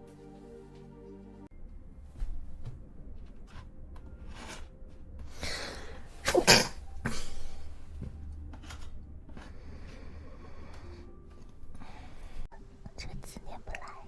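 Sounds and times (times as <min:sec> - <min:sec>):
breathy out-breath: 0:05.2 - 0:06.2, 0:09.4 - 0:12.5
drawn-in breath: 0:05.2 - 0:06.2, 0:09.4 - 0:12.5
woman sneezing: 0:06.2 - 0:07.2.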